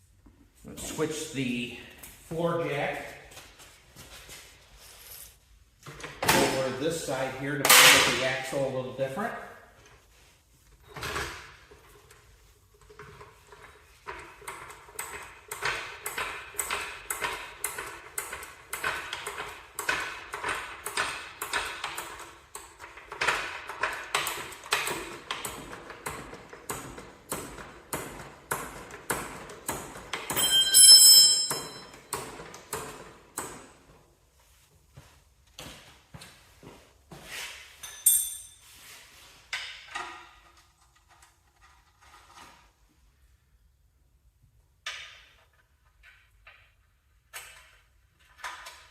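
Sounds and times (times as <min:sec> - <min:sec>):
ringing metal clank: 0:30.3 - 0:32.0.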